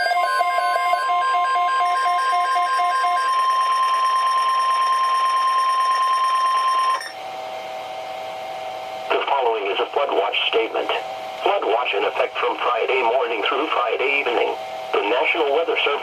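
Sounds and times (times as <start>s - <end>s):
quiet radio hiss: 9.1s - 16.0s.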